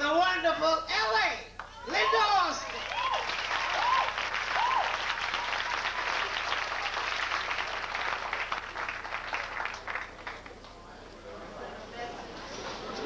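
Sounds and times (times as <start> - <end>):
whooping cheer: 1.6 - 7.1
audience applauding: 1.9 - 13.0.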